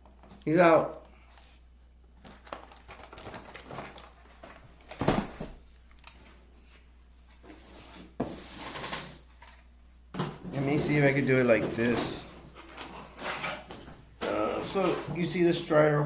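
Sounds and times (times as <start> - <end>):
packaging crinkling: 2.2 - 6.2.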